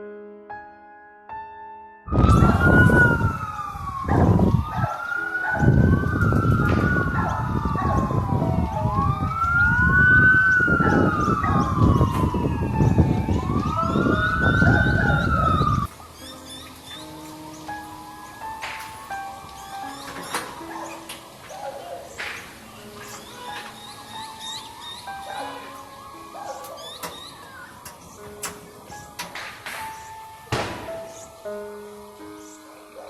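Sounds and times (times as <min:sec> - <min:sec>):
emergency sirens wailing: 0:02.1 - 0:32.2.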